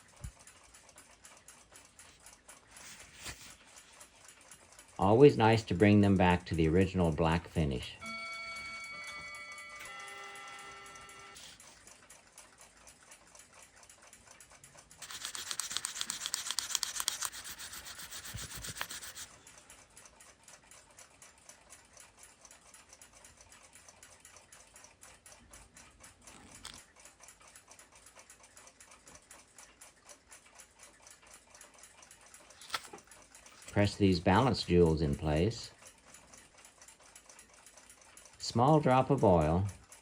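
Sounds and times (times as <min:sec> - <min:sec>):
clock ticking: 0:00.0 - 0:02.8, 0:26.9 - 0:40.0
scratchy noise: 0:15.0 - 0:19.3.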